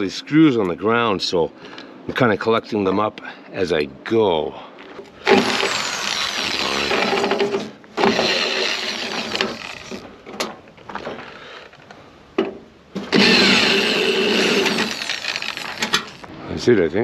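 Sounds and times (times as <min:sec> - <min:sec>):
power drill backing out screws: 0:05.1 - 0:10.5, 0:13.0 - 0:16.3.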